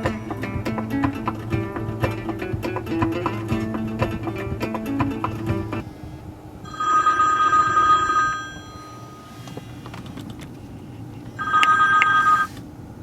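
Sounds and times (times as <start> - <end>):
music from car audio: 0.0 - 5.8
two-tone phone ringtone: 6.7 - 9.2, 11.4 - 12.5.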